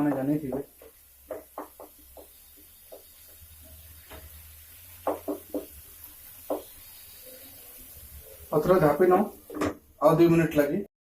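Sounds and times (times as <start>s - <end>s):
spoon knocking metal pan: 0.0s - 4.3s, 5.0s - 6.8s.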